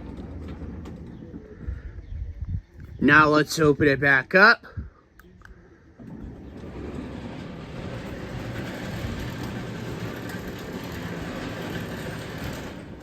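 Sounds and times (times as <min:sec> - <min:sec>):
garage door opener running: 0:00.0 - 0:01.4, 0:06.0 - 0:13.0.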